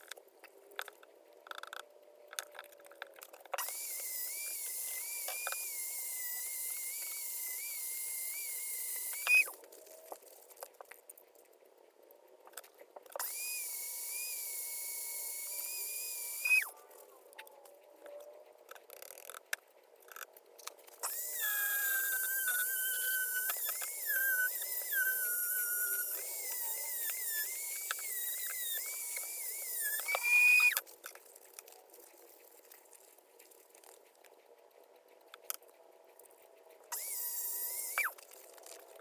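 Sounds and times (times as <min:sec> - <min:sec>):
power tool motor whining: 0:03.6 - 0:09.6, 0:13.2 - 0:16.7, 0:21.0 - 0:30.8, 0:36.9 - 0:38.8.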